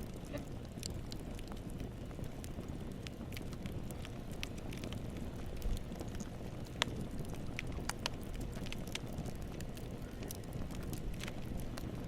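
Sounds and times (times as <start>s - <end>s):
burning wood pops and snaps: 0.0s - 12.0s
wood fire crackling: 0.0s - 12.0s.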